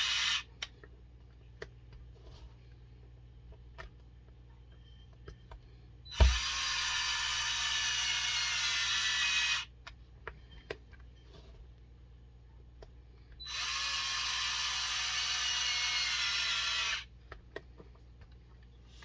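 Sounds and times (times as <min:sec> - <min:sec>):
cordless electric driver running: 0:00.0 - 0:00.5, 0:06.1 - 0:09.7, 0:13.4 - 0:17.1.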